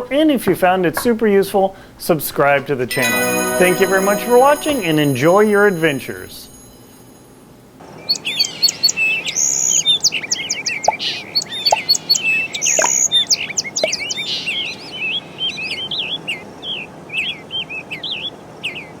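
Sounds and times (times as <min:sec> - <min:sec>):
birds singing: 0:07.9 - 0:19.0.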